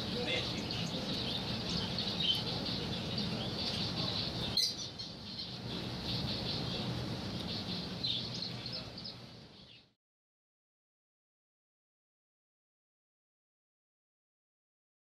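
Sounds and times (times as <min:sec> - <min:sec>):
caged birds chirping: 0:00.0 - 0:10.0
low background hum: 0:00.0 - 0:10.0.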